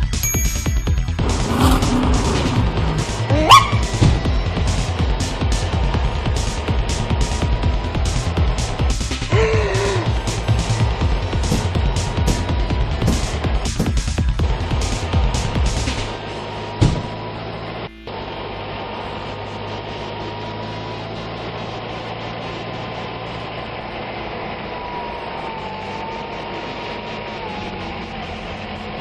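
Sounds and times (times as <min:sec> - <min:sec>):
cartoon vehicle engine hum: 0:00.0 - 0:29.0
thump: 0:04.0 - 0:04.3, 0:16.8 - 0:17.2.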